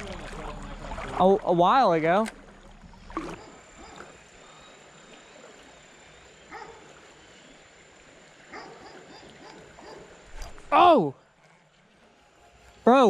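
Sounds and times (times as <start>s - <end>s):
creek water rushing: 0.0s - 13.0s
faint animal calls: 3.2s - 5.8s, 8.5s - 10.3s.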